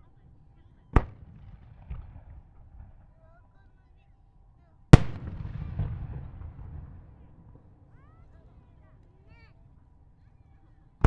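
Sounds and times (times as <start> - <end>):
rolling echo: 0.0 - 3.1, 4.9 - 9.2
firework shells bursting: 5.0 - 6.7.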